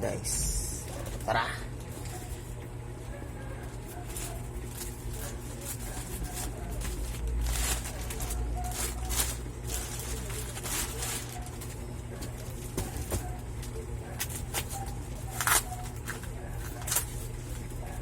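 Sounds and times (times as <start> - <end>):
plastic packaging rustling and tearing: 3.6 - 18.0.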